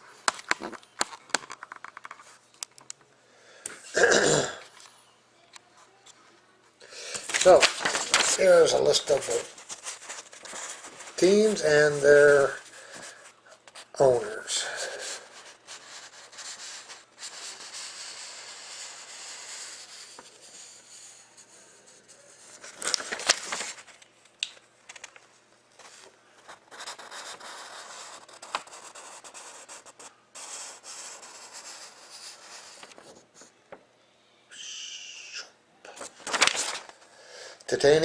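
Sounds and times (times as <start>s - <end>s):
paper rubbing on a surface: 7.3s - 13.2s, 14.8s - 22.7s, 25.8s - 33.0s.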